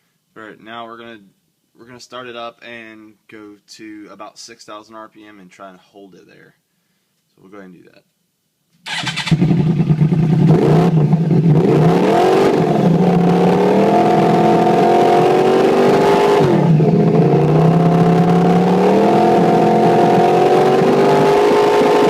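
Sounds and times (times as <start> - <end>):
motorcycle engine revving: 8.9 - 22.0.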